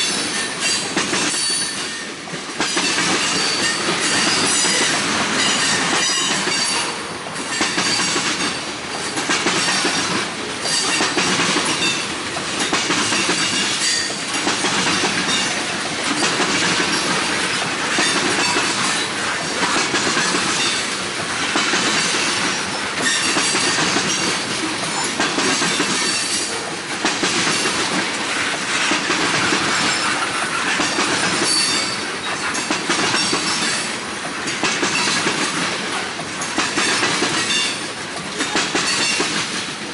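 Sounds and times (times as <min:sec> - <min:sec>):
railroad car wheels clicking: 0:00.0 - 0:39.9
high wheel squeal: 0:30.9 - 0:33.9.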